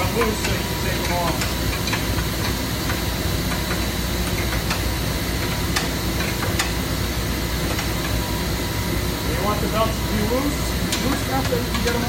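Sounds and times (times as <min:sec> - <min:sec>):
machinery hum and hiss: 0:00.0 - 0:12.0.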